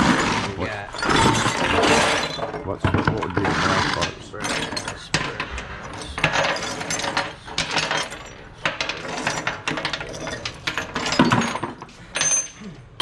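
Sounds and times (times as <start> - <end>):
scrap metal pieces clinking: 0.0 - 13.0.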